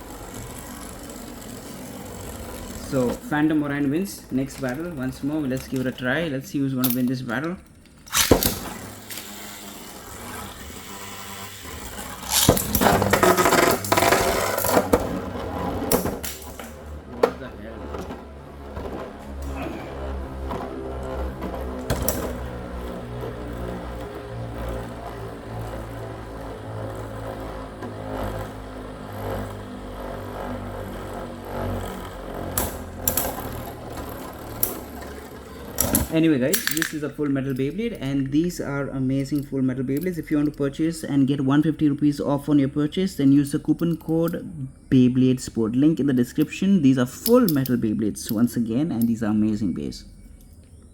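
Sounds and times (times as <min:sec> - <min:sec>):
spinning tops whirring: 0:00.0 - 0:41.2
metal tops clashing: 0:35.8 - 0:37.1.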